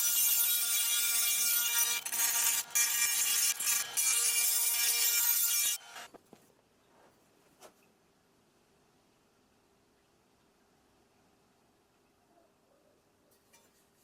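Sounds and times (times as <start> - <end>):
power tool grinding: 0.0 - 6.2.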